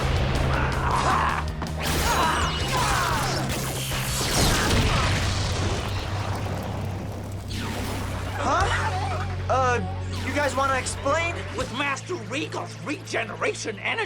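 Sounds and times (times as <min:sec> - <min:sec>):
crashes and impacts: 0:03.5 - 0:08.5.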